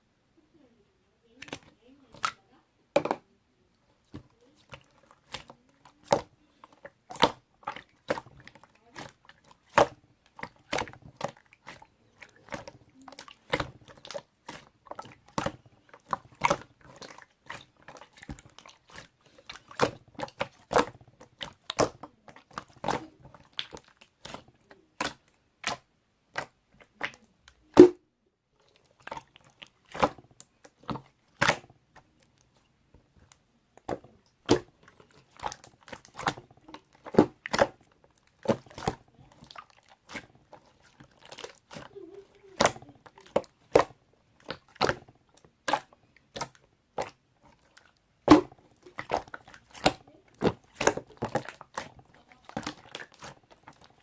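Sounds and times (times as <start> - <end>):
slime squished by hand popping: 30.8 - 31.7, 48.2 - 51.9.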